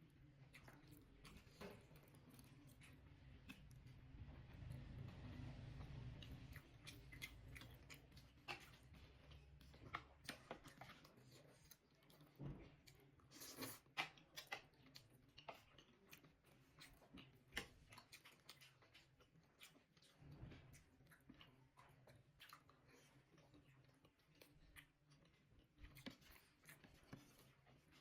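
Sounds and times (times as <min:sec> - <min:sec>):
person chewing with wet mouth clicks: 0:06.5 - 0:20.2, 0:20.8 - 0:28.0.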